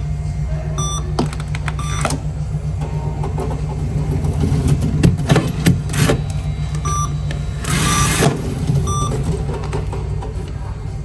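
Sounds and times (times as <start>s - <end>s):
car engine and tyres rumbling: 0.0s - 11.0s
short electronic beeps: 0.8s - 1.2s, 1.8s - 2.1s, 6.8s - 9.4s.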